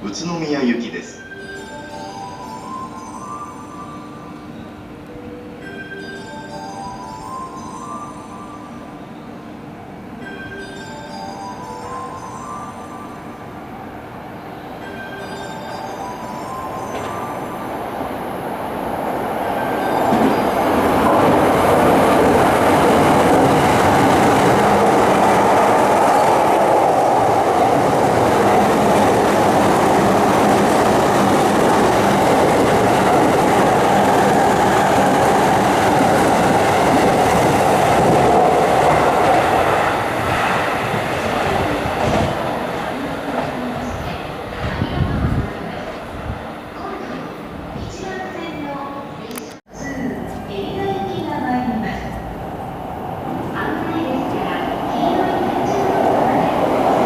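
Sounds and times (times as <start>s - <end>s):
train wheels on rails: 14.8s - 48.2s, 52.5s - 57.0s.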